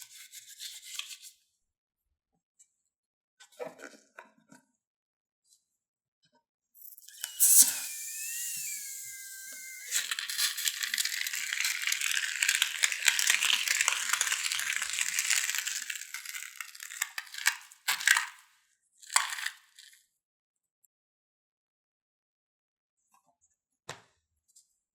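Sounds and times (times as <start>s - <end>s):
wavering squeak: 6.8s - 17.0s
slime crackling and squishing: 8.4s - 18.3s.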